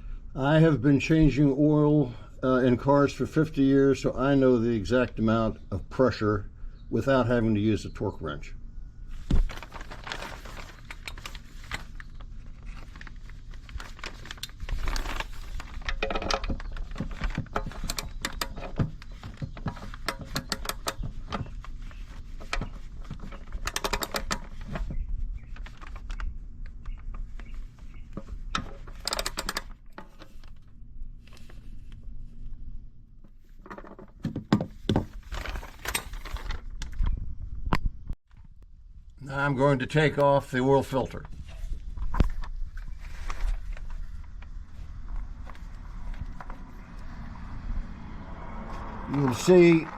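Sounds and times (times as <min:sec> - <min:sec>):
low steady hum: 0:00.0 - 0:47.6.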